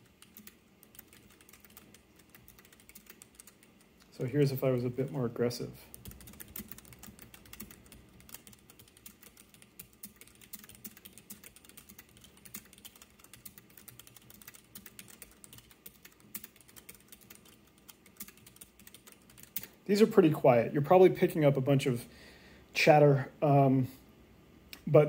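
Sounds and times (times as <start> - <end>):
keyboard typing: 0.0 - 19.8.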